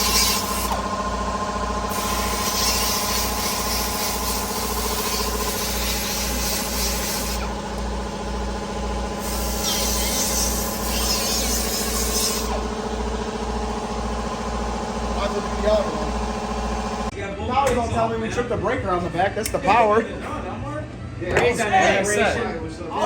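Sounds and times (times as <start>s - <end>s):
wire wheel scrubbing metal: 0.0s - 1.0s, 1.8s - 12.8s.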